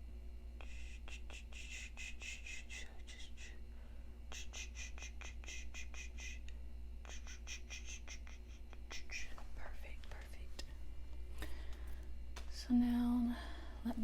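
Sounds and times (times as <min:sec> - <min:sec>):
razor scratching strokes: 0:07.1 - 0:09.8.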